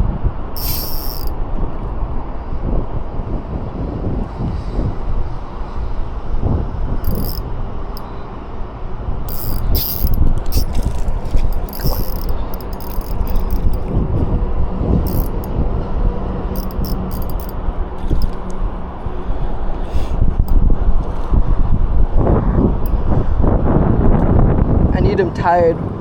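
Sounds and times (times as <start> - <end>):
wind rumble on microphone: 0.0 - 26.0
fishing reel clicking: 0.6 - 1.4, 7.0 - 7.4, 9.3 - 14.4, 15.1 - 15.5, 16.6 - 18.6.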